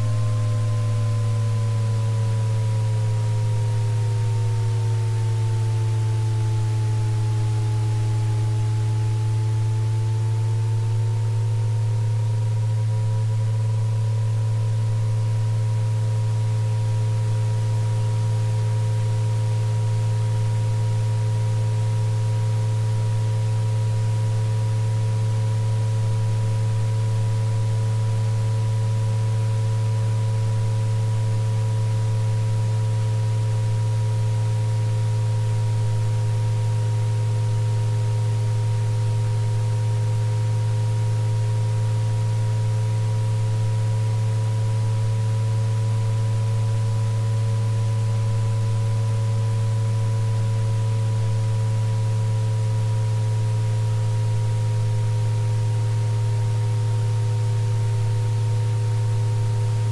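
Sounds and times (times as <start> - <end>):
loud steady low hum: 0.0 - 59.9.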